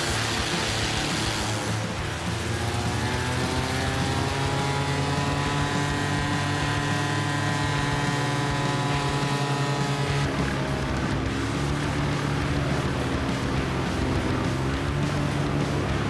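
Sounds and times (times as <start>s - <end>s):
wood chipper engine running: 0.0s - 16.0s.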